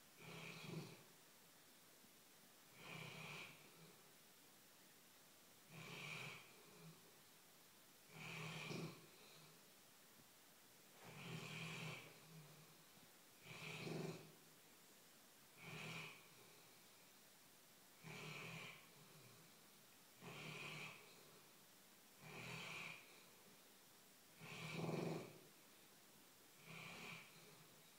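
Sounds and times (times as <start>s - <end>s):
dog snoring: 0.2s - 1.0s, 2.7s - 4.0s, 5.7s - 7.1s, 8.1s - 9.6s, 11.0s - 14.4s, 15.6s - 16.8s, 18.0s - 19.6s, 20.2s - 21.5s, 22.2s - 23.4s, 24.4s - 25.5s, 26.6s - 27.9s.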